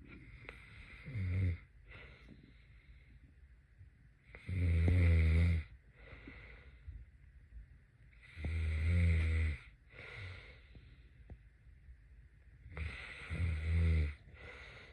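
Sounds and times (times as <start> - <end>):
person snoring: 0.6 - 1.6, 4.4 - 5.7, 8.2 - 10.6, 12.7 - 14.9
soft breath out: 5.9 - 7.0, 14.2 - 14.9.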